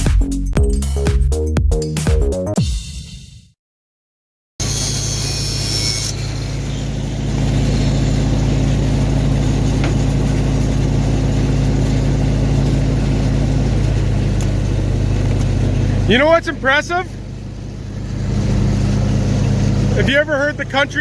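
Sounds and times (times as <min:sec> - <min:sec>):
engine running steadily: 0:06.1 - 0:21.0.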